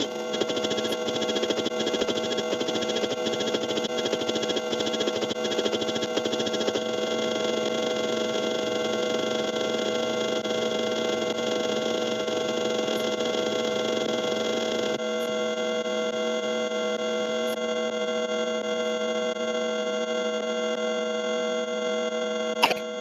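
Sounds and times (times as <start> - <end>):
buzzing drone over hiss: 0.0 - 10.1.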